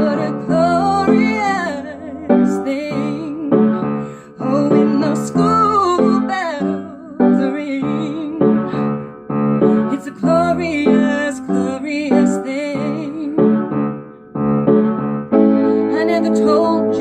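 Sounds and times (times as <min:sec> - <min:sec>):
person singing long held notes: 0:00.0 - 0:08.9
piano chords: 0:00.0 - 0:17.0.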